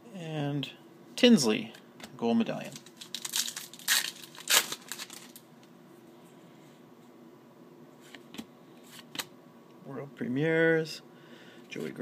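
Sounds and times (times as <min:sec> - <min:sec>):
faint hum: 0:00.0 - 0:12.0
trading cards and foil rustling: 0:02.6 - 0:05.4.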